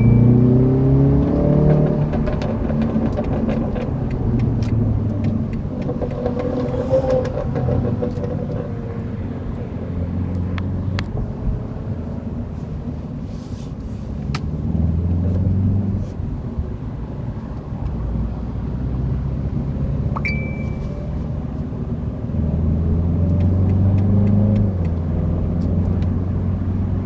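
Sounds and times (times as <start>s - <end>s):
car engine revving: 0.0s - 11.0s, 18.5s - 27.0s
exhaust pops and crackles: 1.7s - 8.7s.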